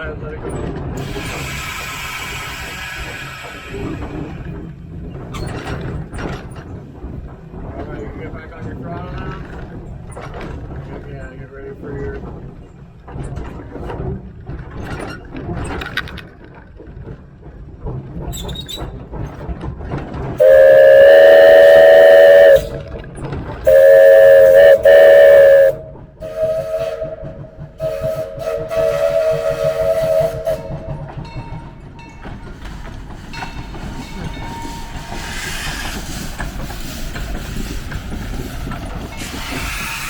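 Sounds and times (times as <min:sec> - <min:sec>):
locomotive running rumble: 0:00.0 - 0:40.0
steam whistle blasts: 0:20.4 - 0:23.0, 0:23.7 - 0:31.1.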